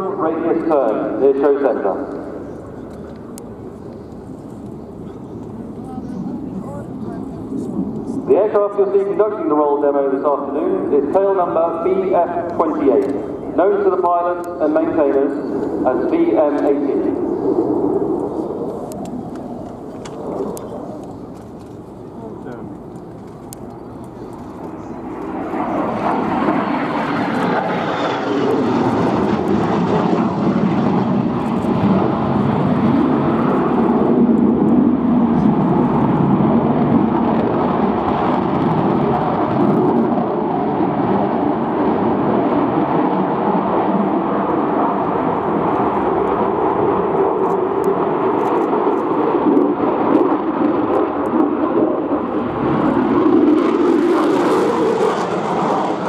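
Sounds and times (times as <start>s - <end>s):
loud jet engine roar: 0.0s - 56.0s.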